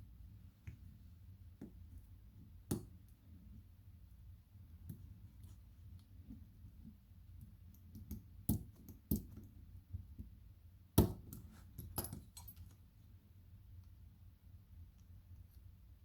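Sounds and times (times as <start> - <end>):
metal tools clicking and scraping: 11.8 - 12.8.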